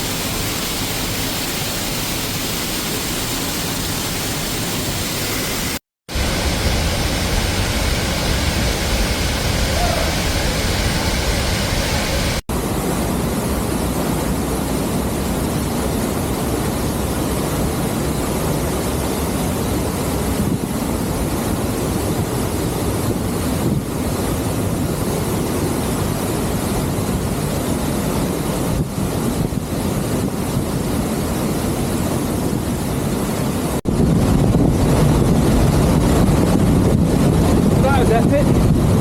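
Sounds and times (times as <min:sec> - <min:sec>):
waterfall rushing: 0:00.0 - 0:18.1.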